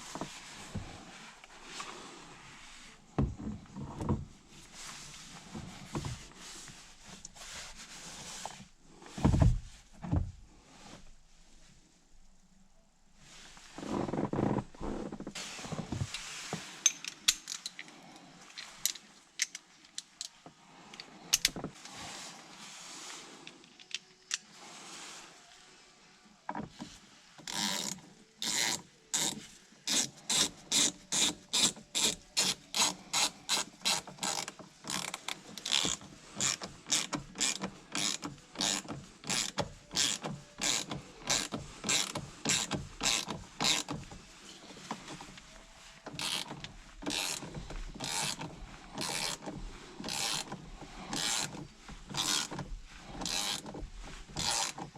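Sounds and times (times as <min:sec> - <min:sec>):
ratchet wrench clicking: 0:27.5 - 0:29.3, 0:29.9 - 0:43.9, 0:46.2 - 0:46.5, 0:47.1 - 0:47.4, 0:48.0 - 0:48.4, 0:50.1 - 0:50.5, 0:51.2 - 0:51.5, 0:52.2 - 0:52.5, 0:53.2 - 0:53.6, 0:54.4 - 0:54.8.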